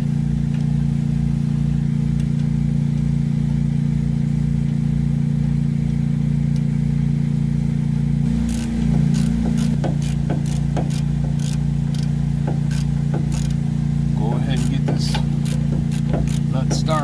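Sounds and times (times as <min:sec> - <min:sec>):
motor humming: 0:08.2 - 0:17.0
sharp metallic clicks: 0:08.3 - 0:12.1, 0:12.7 - 0:13.6, 0:14.3 - 0:17.0.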